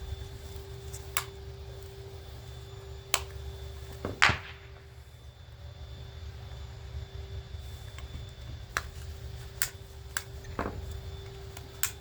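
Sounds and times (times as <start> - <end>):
steady low hum: 0.0 - 12.0
sharp snaps of breaking part: 4.0 - 4.9, 11.6 - 12.0.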